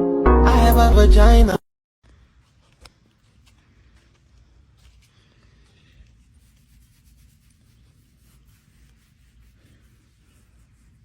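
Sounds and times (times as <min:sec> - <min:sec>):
faint scratching and rubbing: 0:02.4 - 0:11.0.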